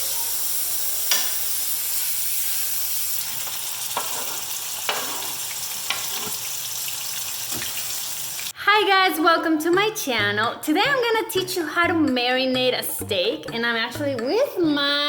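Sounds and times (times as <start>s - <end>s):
food sizzling: 0.0s - 8.6s.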